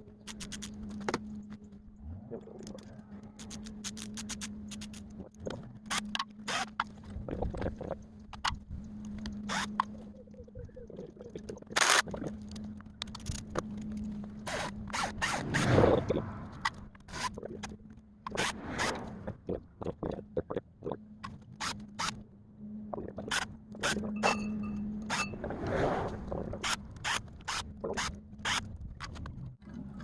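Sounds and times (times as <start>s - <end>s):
steady low hum: 0.0s - 30.0s
hand tools clicking and scraping metal: 0.2s - 1.7s, 2.6s - 7.2s.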